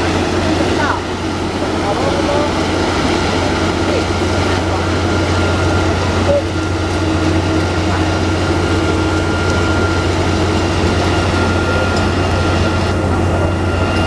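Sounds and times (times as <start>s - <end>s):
low engine drone: 0.0s - 14.0s
thin steady whine: 0.0s - 14.0s.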